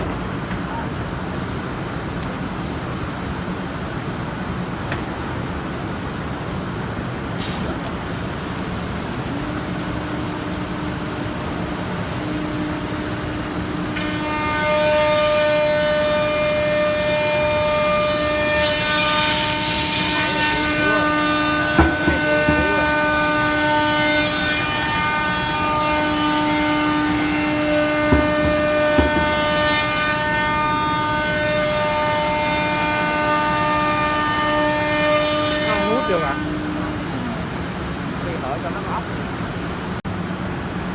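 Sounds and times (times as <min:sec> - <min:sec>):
machine running: 0:07.9 - 0:39.9
spindle high whine: 0:08.1 - 0:40.0
sharp knocks: 0:18.7 - 0:30.8.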